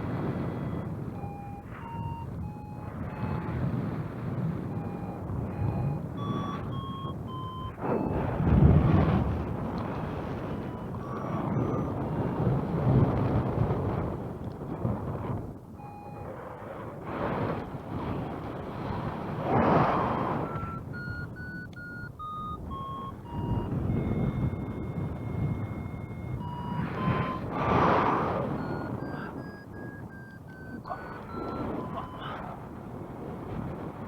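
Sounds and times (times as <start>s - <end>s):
long steady tone: 0.0s - 14.6s, 15.6s - 33.9s
wind noise on microphone: 0.0s - 34.0s
variometer beeping: 0.4s - 13.5s, 15.5s - 16.4s, 19.3s - 32.8s.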